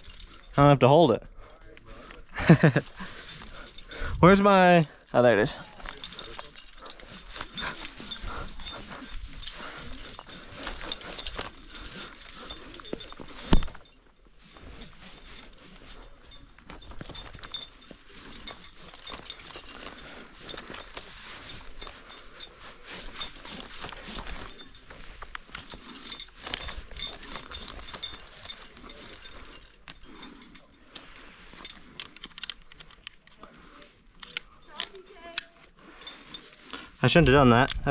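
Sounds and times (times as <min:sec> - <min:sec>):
metal climbing gear clinking: 0:00.0 - 0:37.9.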